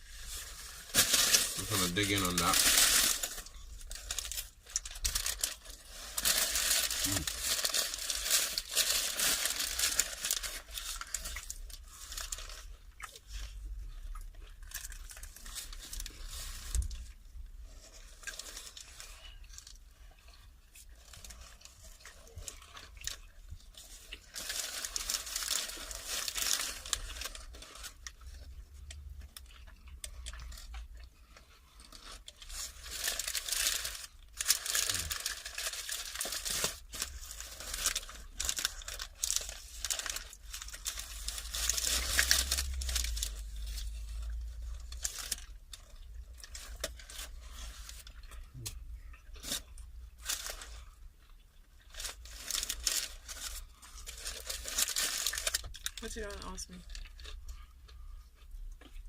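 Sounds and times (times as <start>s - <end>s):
wrapper crinkling and tearing: 0.0s - 58.1s
biting and chewing: 0.9s - 55.9s, 56.9s - 59.0s.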